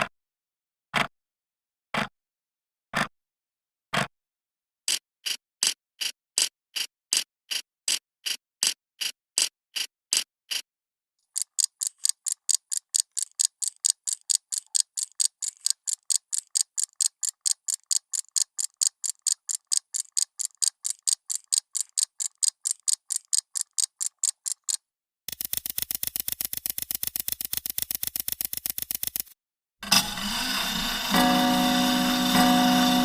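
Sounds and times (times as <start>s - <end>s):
clock ticking fast: 4.9s - 29.3s
slower clock ticking: 11.2s - 24.8s.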